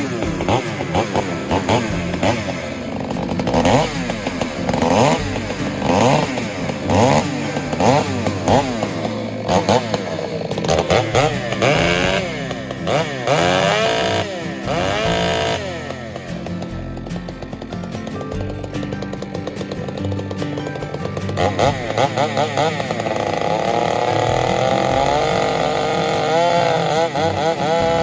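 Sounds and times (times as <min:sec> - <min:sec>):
chainsaw cutting under load: 0:00.0 - 0:28.0.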